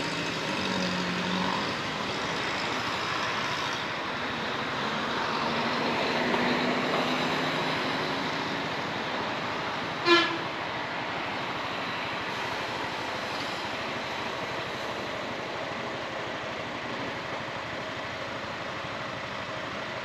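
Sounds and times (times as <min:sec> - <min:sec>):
wind and road noise: 0:00.0 - 0:20.0.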